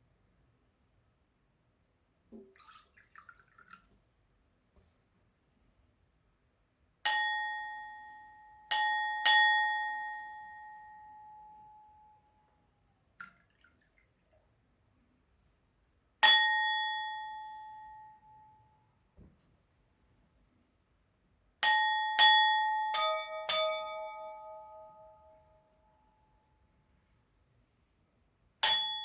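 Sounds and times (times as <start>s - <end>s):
crystal glass ringing when struck: 28.6s - 29.0s.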